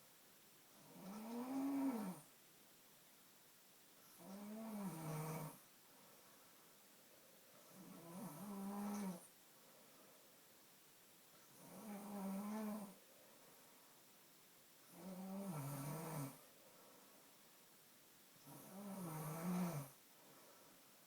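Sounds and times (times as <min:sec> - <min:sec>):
droning snores: 0:00.8 - 0:02.3, 0:04.2 - 0:05.6, 0:07.7 - 0:09.3, 0:11.6 - 0:13.0, 0:14.9 - 0:16.4, 0:18.4 - 0:20.0.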